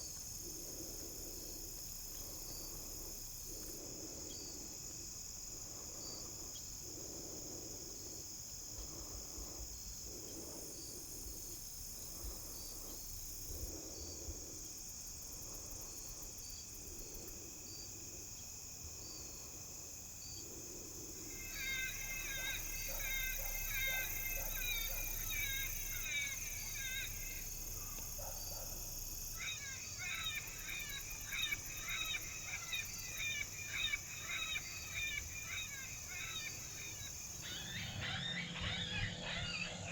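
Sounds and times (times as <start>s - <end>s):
insects trilling: 0.0s - 39.9s
low wavering animal call: 21.3s - 39.8s
high rapid yelping calls: 21.4s - 27.5s.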